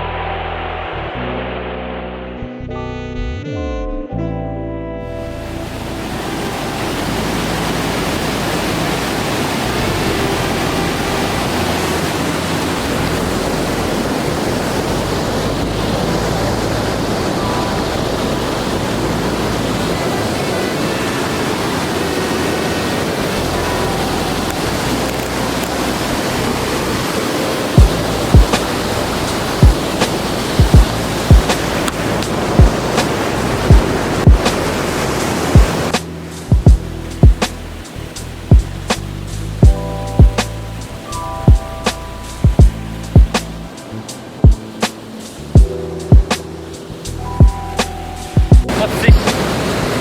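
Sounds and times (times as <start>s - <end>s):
rushing water roar: 5.2s - 50.0s
sharp low thumps: 27.8s - 43.8s, 44.4s - 44.6s, 45.6s - 46.5s, 47.3s - 49.6s.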